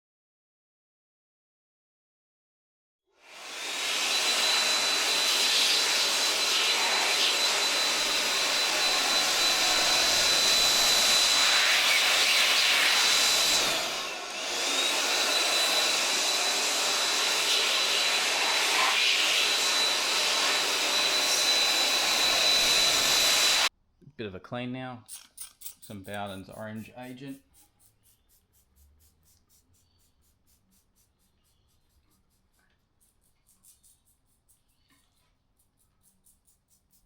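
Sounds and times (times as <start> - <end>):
electric fan motor whining: 3.3 - 23.7.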